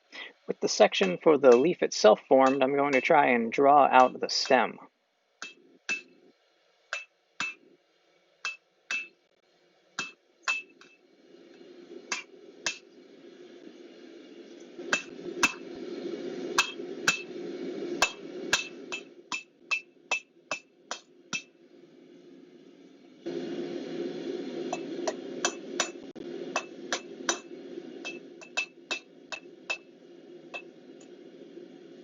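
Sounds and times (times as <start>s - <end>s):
hammer striking hot steel: 0.9s - 4.7s, 5.4s - 6.3s, 6.9s - 7.7s, 8.4s - 9.2s, 10.0s - 13.0s, 14.8s - 15.8s, 16.5s - 17.4s, 18.0s - 21.6s, 24.7s - 31.2s
steady rushing noise: 8.9s - 32.0s.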